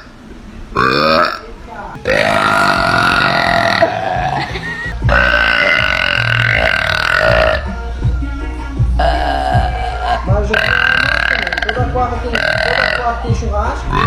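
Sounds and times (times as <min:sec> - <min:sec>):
woman burping: 0:00.8 - 0:01.4, 0:02.0 - 0:07.7, 0:09.0 - 0:13.1.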